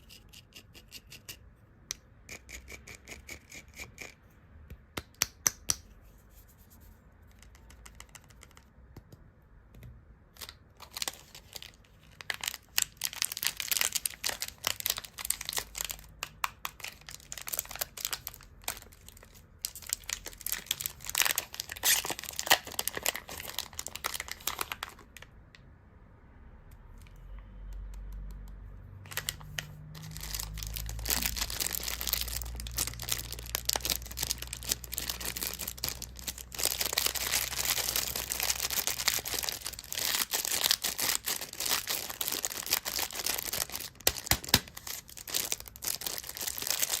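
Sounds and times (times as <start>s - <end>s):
candy wrappers crinkling: 10.4s - 25.3s, 29.1s - 47.0s.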